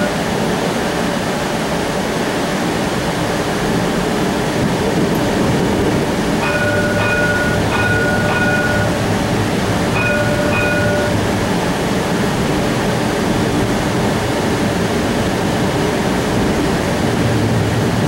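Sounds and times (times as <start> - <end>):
brief steady tone: 0.0 - 0.3, 6.4 - 9.1, 9.9 - 11.4
streetcar rumbling on track: 0.0 - 18.0.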